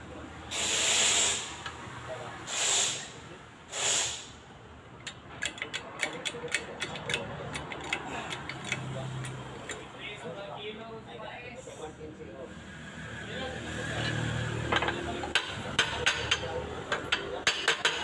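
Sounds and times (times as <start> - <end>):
short hissing sprays: 0.5 - 1.6, 2.5 - 4.4
ratchet wrench clicking: 5.0 - 9.9.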